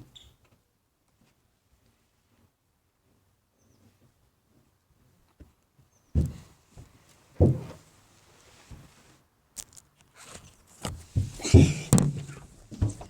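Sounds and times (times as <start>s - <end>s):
dull heavy thumps: 7.4s - 7.8s, 10.9s - 13.0s.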